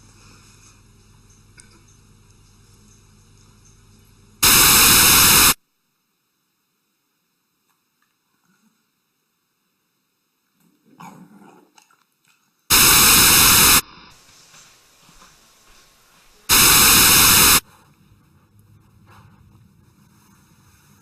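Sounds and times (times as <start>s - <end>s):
harsh static bursts: 4.4s - 5.6s, 12.7s - 13.9s, 16.5s - 17.6s.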